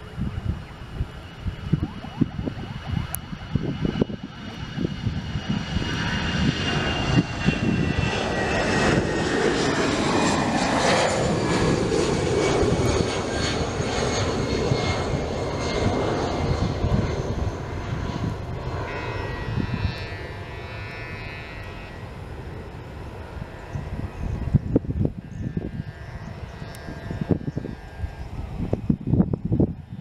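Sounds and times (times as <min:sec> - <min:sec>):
high falling whine: 0:00.0 - 0:13.9
jet engines passing close by: 0:00.0 - 0:30.0.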